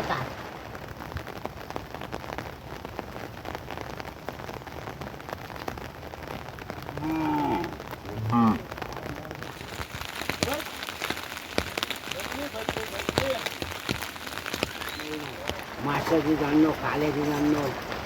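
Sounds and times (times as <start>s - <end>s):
steady rain falling: 0.0s - 18.0s
dripping clicks: 9.4s - 18.0s.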